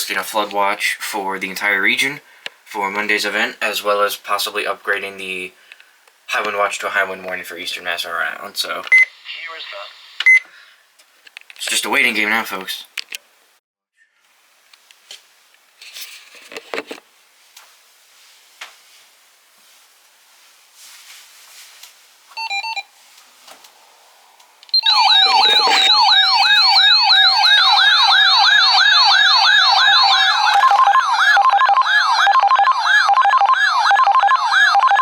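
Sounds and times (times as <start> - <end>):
electronic emergency alert tone: 22.4 - 22.8, 24.8 - 35.0
short beeps: 24.8 - 27.6.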